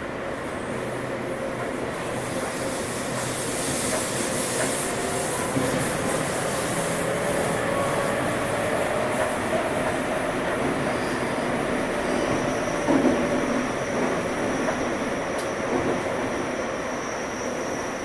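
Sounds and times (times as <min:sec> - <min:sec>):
train wheels rumbling on rail: 0:00.0 - 0:18.0.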